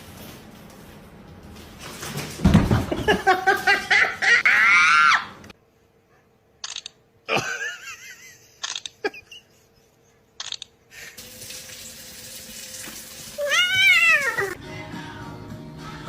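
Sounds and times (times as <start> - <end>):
running water hiss: 11.2 - 14.6.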